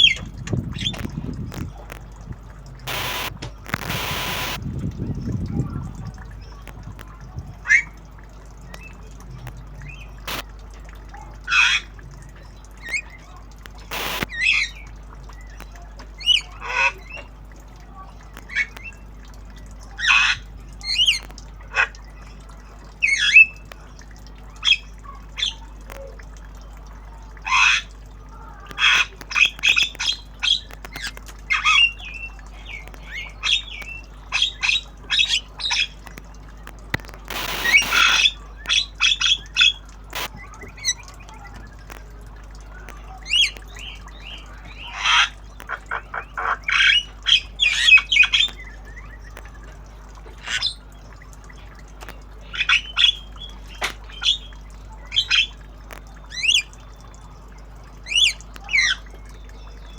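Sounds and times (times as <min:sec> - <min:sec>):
bird squawking and chirping: 0:12.8 - 0:14.9, 0:37.3 - 0:41.8, 0:42.7 - 0:49.5.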